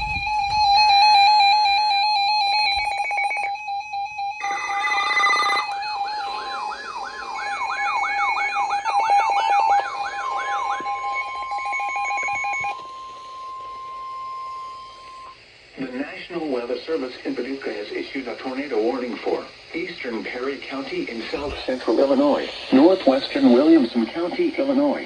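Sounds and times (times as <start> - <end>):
siren sweeping up and down: 0.0 - 15.4, 21.4 - 24.3
steady alarm tone: 0.0 - 15.5, 21.2 - 25.0
long steady tone: 0.0 - 25.0.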